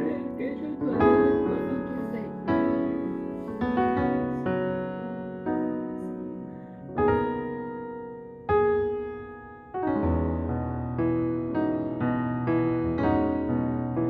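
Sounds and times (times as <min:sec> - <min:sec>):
slow piano chords: 0:00.0 - 0:14.0.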